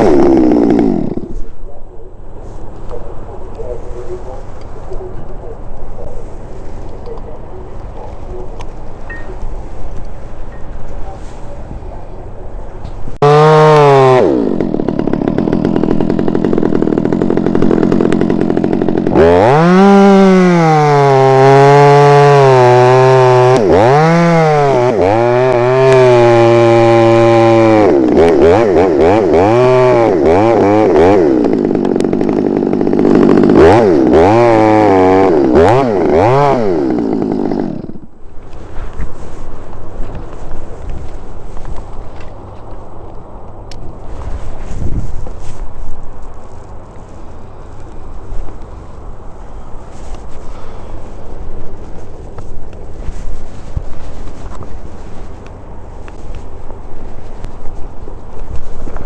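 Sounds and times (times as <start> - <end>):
chainsaw cutting wood: 0.0 - 1.5, 13.2 - 42.3, 44.0 - 59.0.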